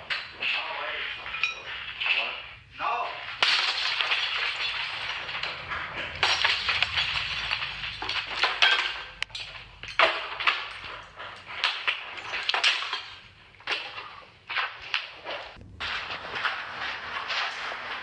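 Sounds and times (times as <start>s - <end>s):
clinking of breaking parts: 3.2s - 14.1s
ceiling fan being smashed: 3.2s - 18.0s.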